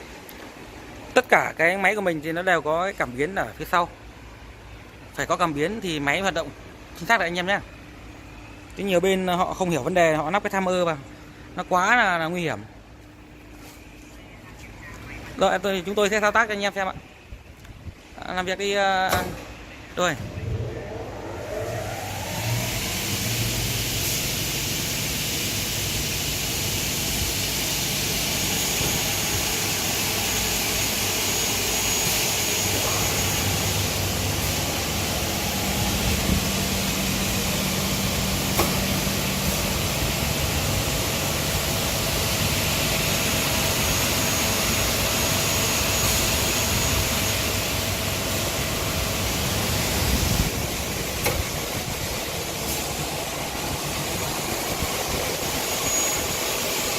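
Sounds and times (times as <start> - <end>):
thin high whine: 19.8 - 25.6, 52.6 - 56.9
circular saw machine running: 19.8 - 56.9.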